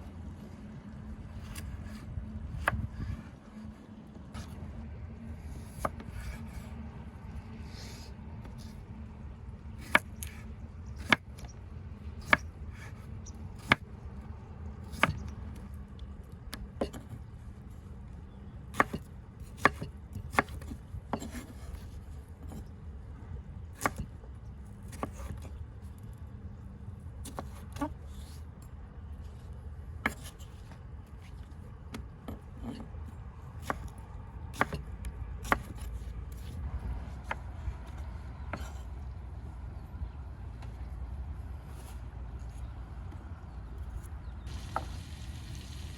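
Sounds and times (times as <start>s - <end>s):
knife chopping on wooden board: 9.8s - 10.4s, 12.2s - 13.0s, 13.6s - 13.8s, 14.9s - 15.3s, 16.8s - 17.1s, 18.8s - 21.7s, 23.8s - 24.1s, 27.3s - 28.3s, 30.0s - 30.5s, 33.6s - 36.6s, 37.2s - 37.4s.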